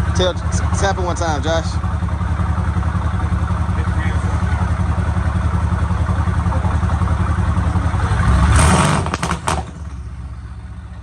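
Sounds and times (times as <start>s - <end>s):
car engine revving: 3.9s - 10.8s
exhaust pops and crackles: 7.7s - 10.1s.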